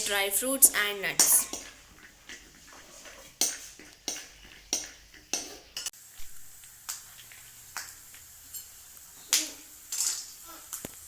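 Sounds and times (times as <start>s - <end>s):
spatula scraping a pan: 0.0s - 5.9s, 8.5s - 10.6s
nuts frying in oil: 0.0s - 11.0s.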